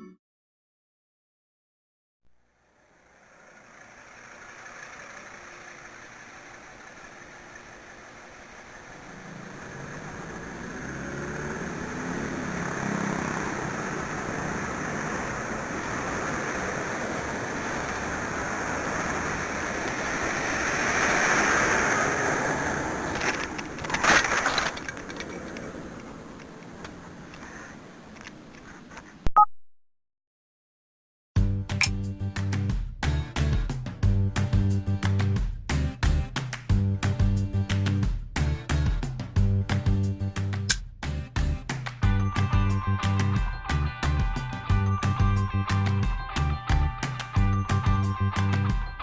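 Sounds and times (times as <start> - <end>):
bike tyre noise: 2.7 - 29.2.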